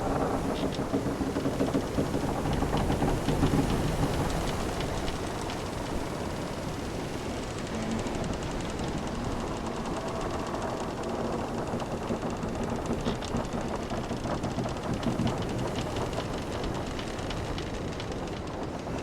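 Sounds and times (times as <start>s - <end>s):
low groans of timbers: 0.0s - 19.0s
wooden ship timbers creaking: 0.0s - 19.0s
ocean waves: 1.5s - 13.6s.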